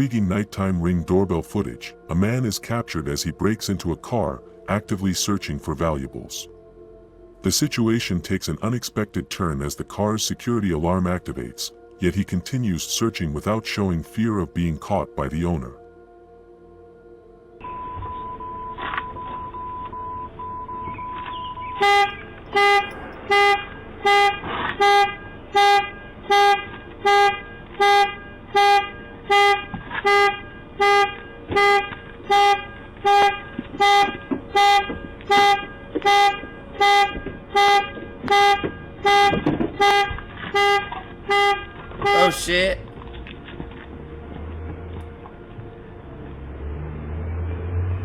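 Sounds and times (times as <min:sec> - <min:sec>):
car horn honking: 0:21.6 - 0:42.9
steady high tone: 0:42.0 - 0:42.9.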